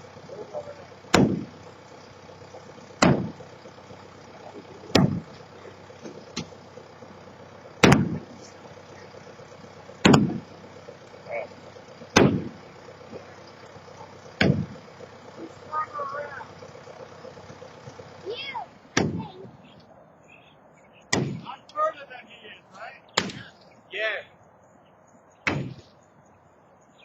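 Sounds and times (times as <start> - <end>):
low machine background: 0.0 - 27.0
heavy demolition impacts: 0.9 - 6.6, 7.6 - 11.2, 11.8 - 18.1, 21.1 - 21.6, 25.5 - 25.8.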